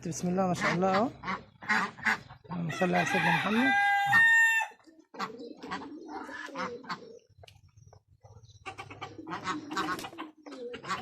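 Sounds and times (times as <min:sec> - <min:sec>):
pigeons cooing: 0:00.6 - 0:11.0.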